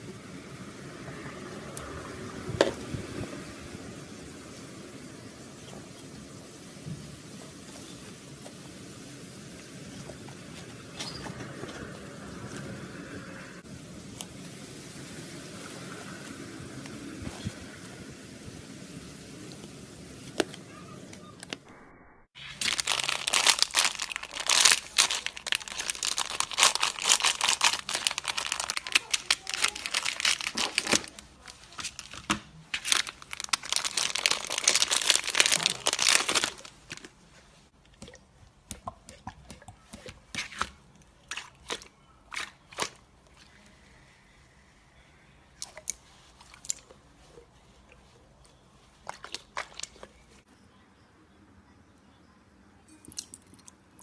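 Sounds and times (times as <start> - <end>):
slime ball crunching: 22.4 - 37.2.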